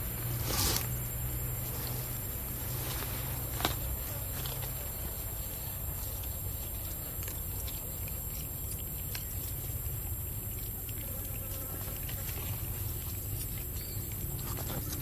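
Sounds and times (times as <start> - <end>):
constant high hiss: 0.0 - 15.0.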